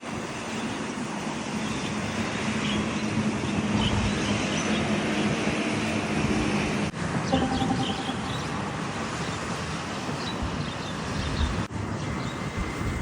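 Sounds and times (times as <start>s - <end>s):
broad rushing noise: 3.0s - 11.8s
low motor hum: 5.7s - 9.6s.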